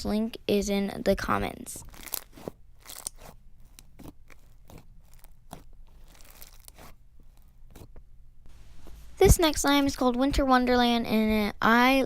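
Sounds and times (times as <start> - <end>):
slime crunching when squeezed: 1.9 - 7.0.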